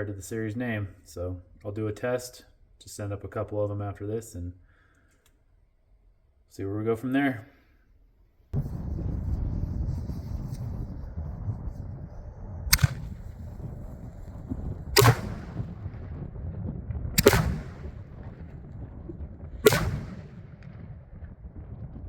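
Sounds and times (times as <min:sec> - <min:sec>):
mortar firing bangs: 0:12.7 - 0:16.4, 0:17.1 - 0:18.7, 0:19.5 - 0:21.1
shells bursting in the air: 0:12.7 - 0:21.9.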